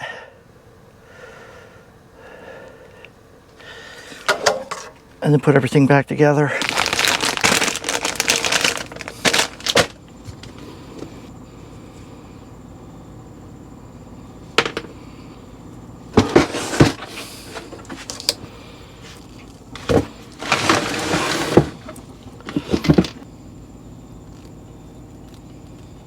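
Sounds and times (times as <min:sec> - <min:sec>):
steady low hum: 0:00.0 - 0:26.0
parts knocking and clattering: 0:04.1 - 0:05.1, 0:14.5 - 0:15.0, 0:16.1 - 0:18.4, 0:19.4 - 0:23.2.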